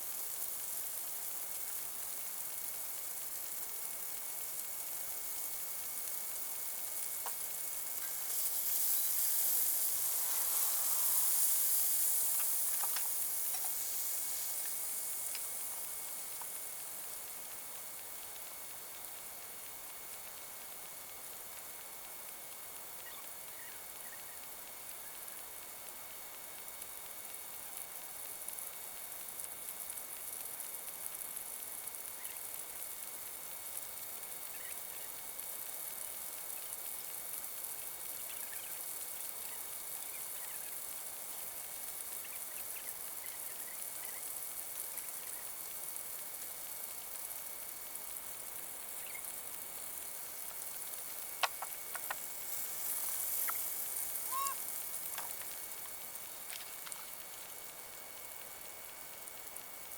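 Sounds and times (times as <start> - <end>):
outdoor hiss: 0.0 - 59.9
faint chirps: 8.0 - 13.0, 23.0 - 24.4, 38.1 - 40.9, 49.0 - 49.4, 53.3 - 55.9
sharp clicks: 51.4 - 52.2.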